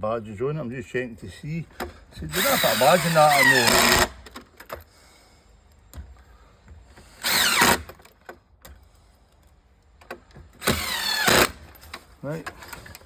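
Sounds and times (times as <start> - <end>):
cordless drill running: 2.3 - 4.2, 7.2 - 7.9, 10.6 - 11.6.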